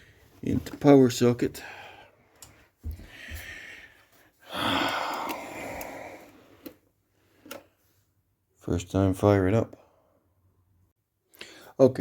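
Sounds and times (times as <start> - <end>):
person exhaling: 3.0 - 6.7.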